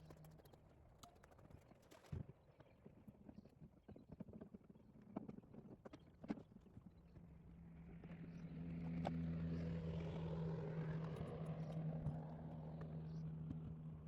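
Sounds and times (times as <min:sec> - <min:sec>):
engine droning passing: 0:08.4 - 0:14.0.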